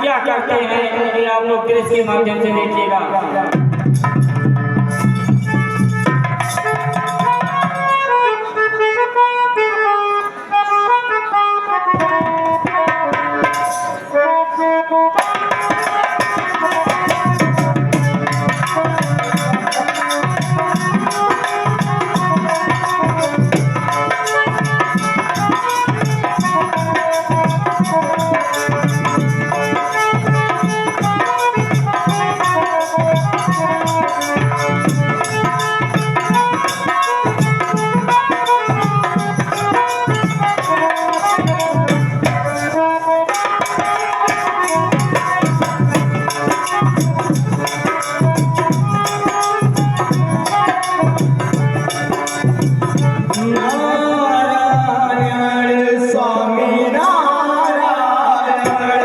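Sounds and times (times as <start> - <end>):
steady drum beat: 3.5 - 7.9, 15.2 - 53.9.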